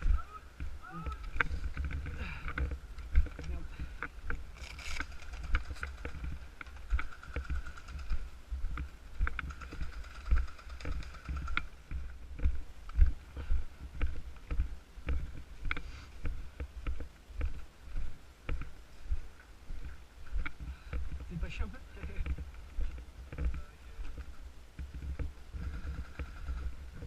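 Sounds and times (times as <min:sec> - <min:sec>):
footsteps walking: 0:00.0 - 0:26.3
gear rustling and clicking: 0:01.0 - 0:13.2, 0:19.4 - 0:27.0.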